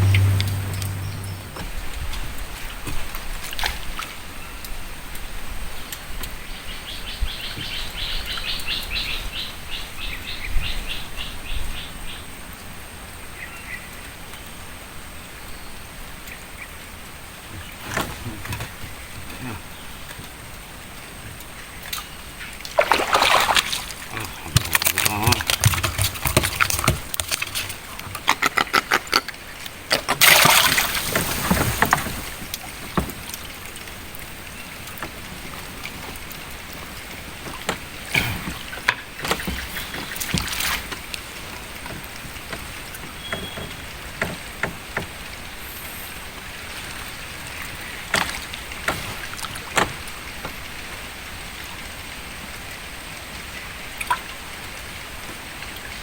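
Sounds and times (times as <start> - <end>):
loud splash: 0.0 - 2.2, 22.7 - 26.6, 30.2 - 32.8
water splashing around boat: 0.0 - 4.5, 17.1 - 52.7
hiss of moving water: 30.2 - 33.4, 45.3 - 47.2.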